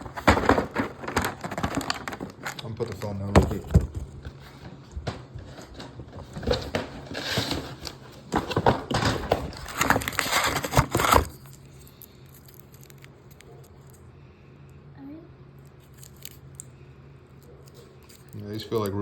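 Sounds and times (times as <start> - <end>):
plastic packaging crinkling: 0.0 - 3.6, 6.3 - 13.9.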